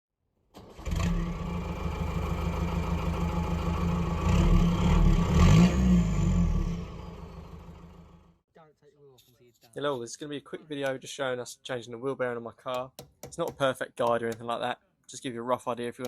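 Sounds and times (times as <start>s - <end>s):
car engine running: 0.9s - 8.3s.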